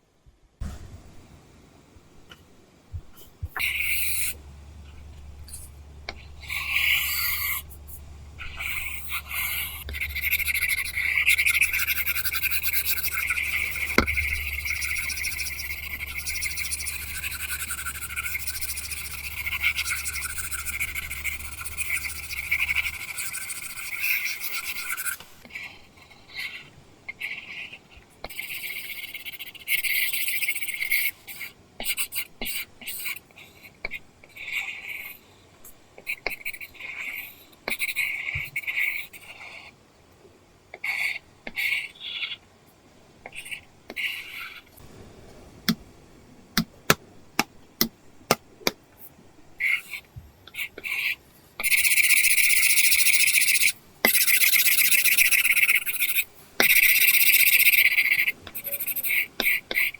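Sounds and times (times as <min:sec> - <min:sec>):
stylus scratching on screen: 0:03.0 - 0:35.2, 0:36.1 - 0:39.8, 0:43.3 - 0:44.9, 0:49.6 - 0:59.9.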